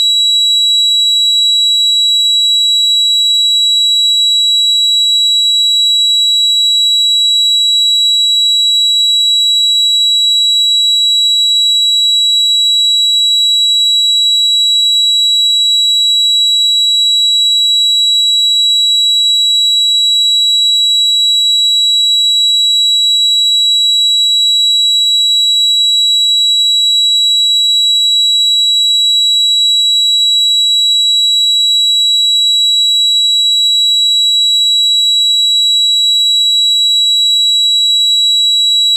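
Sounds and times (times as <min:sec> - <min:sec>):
high-pitched ringing tone: 0:00.0 - 0:38.9.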